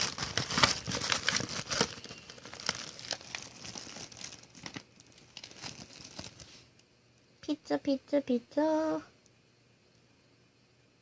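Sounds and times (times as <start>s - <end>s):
packaging crumpled and torn: 0.0s - 6.6s.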